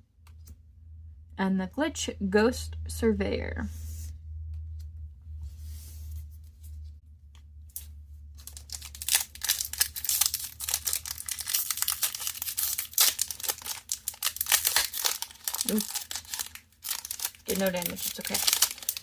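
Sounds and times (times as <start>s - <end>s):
steady low hum: 0.0s - 19.0s
foil wrapper tearing and crinkling: 7.7s - 19.0s.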